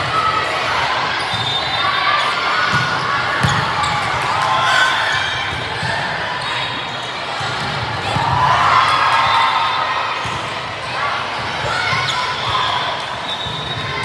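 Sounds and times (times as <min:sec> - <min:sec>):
voices echoing in a hall: 0:00.0 - 0:14.0.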